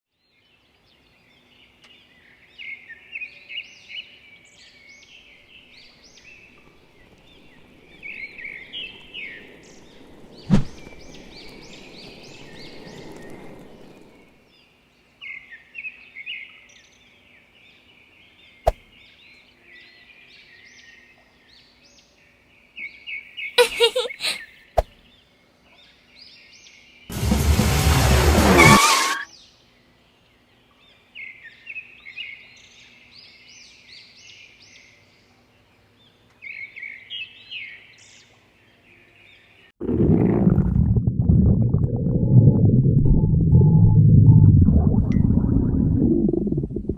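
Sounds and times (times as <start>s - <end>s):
birds chirping: 5.0s - 14.4s, 23.4s - 25.2s
low rumbling noise: 39.8s - 46.9s.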